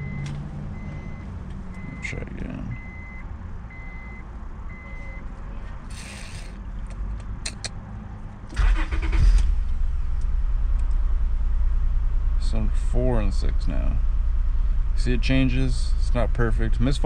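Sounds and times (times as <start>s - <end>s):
starter cranking engine: 5.9s - 6.6s, 8.5s - 9.6s
car engine idling: 8.5s - 17.0s.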